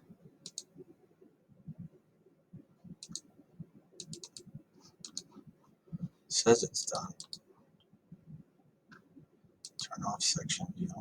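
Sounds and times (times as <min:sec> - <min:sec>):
computer mouse clicking: 0:00.4 - 0:00.7, 0:03.0 - 0:03.3, 0:04.0 - 0:05.4, 0:07.0 - 0:07.4, 0:09.6 - 0:09.9.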